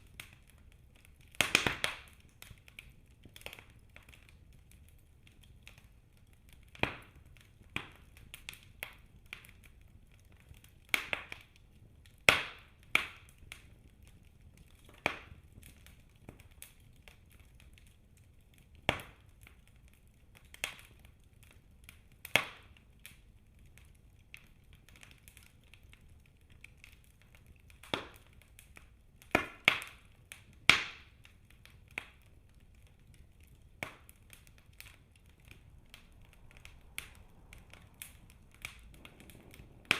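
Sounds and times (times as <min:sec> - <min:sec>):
wood fire crackling and popping: 0:00.0 - 0:39.9
faint low hiss: 0:27.8 - 0:39.9.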